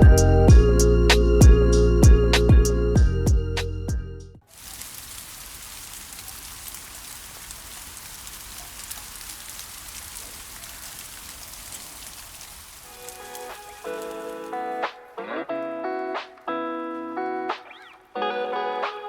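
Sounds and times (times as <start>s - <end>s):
steady rain hiss: 4.4s - 15.1s
rain drop ticks: 4.5s - 14.9s.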